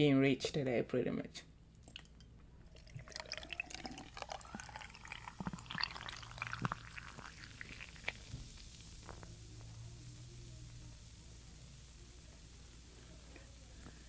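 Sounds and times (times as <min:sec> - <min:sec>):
drink pouring into a glass: 0:01.8 - 0:09.4
small clicks and pops: 0:06.5 - 0:09.8.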